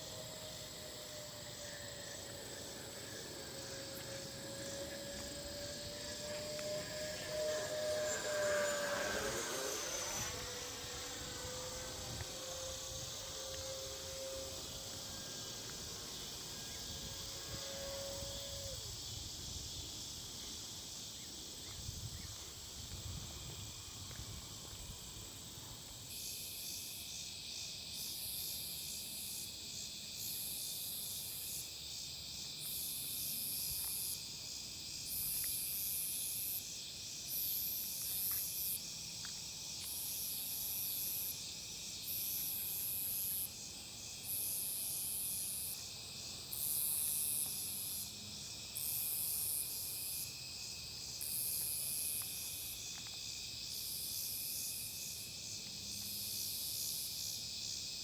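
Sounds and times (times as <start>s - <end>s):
pulsed high insect buzzing: 0.0s - 19.8s, 39.6s - 50.6s
insects trilling: 0.0s - 58.0s.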